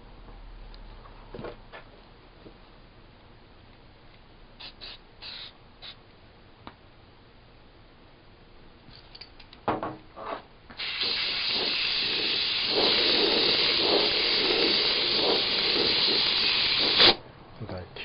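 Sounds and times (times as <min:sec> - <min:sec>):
spray can hissing: 0:04.6 - 0:06.0, 0:10.7 - 0:17.2.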